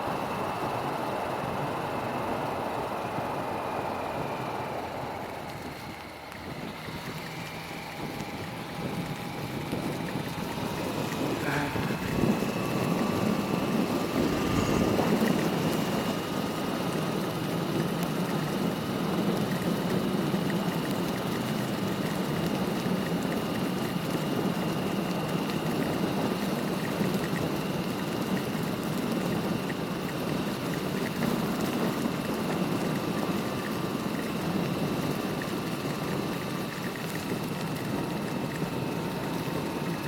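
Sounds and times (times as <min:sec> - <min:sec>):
motorcycle engine running: 0:00.0 - 0:40.0
road noise: 0:00.0 - 0:40.0.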